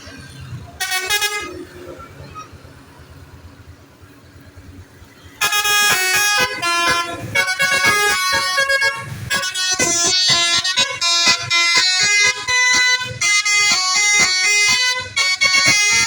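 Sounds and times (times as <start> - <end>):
multi-tone bus horn melody: 0.7 - 2.5, 5.3 - 16.0.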